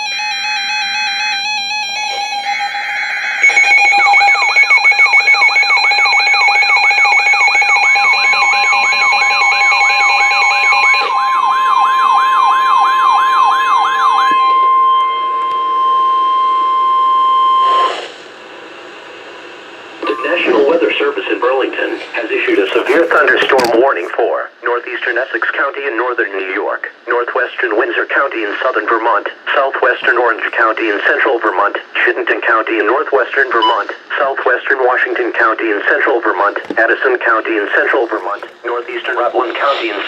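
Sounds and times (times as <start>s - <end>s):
steady beeping tones: 0.0s - 11.5s, 20.0s - 23.3s
single-pitched warning alarm tone: 0.0s - 18.0s, 20.0s - 21.9s
electronic siren sweeping: 0.0s - 18.2s.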